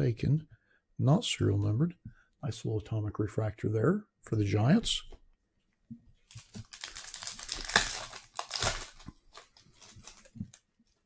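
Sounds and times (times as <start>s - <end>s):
wrapper crinkling and tearing: 6.3s - 10.7s.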